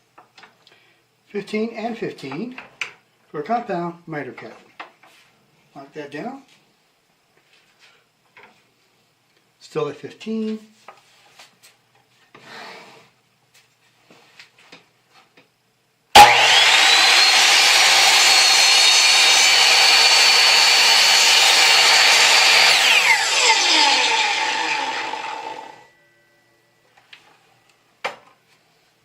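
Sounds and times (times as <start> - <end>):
miter saw whining: 16.2 - 25.9.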